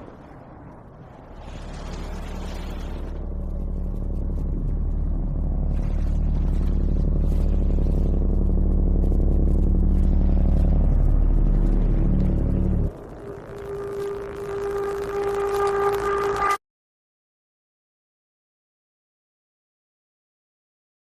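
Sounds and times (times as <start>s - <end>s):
deep droning rumble: 0.0s - 16.6s.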